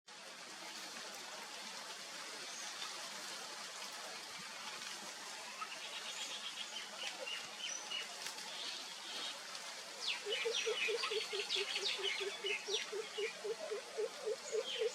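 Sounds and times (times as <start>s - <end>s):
steady outdoor hiss: 0.1s - 14.9s.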